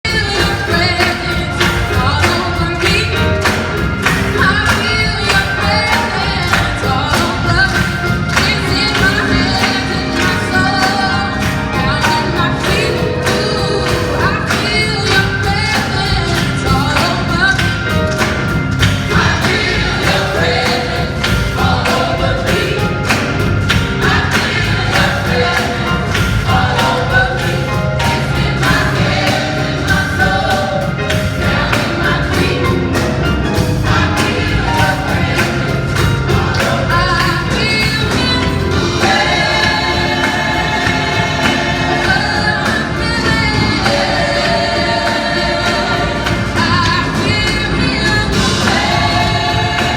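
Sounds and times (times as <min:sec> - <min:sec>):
gospel choir singing: 0:00.0 - 0:49.9
steady beat: 0:00.1 - 0:49.9.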